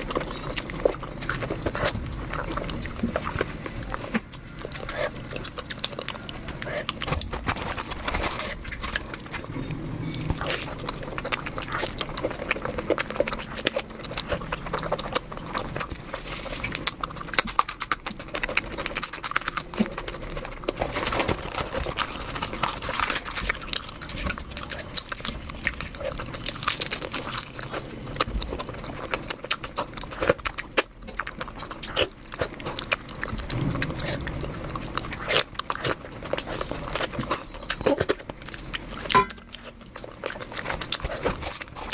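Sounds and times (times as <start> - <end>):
chewing and biting food: 0.0 - 41.9.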